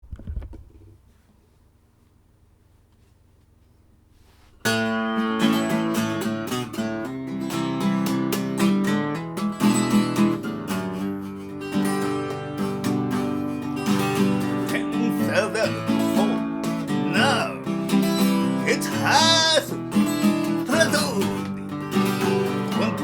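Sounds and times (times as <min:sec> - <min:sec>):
acoustic guitar strumming: 0:04.6 - 0:23.0.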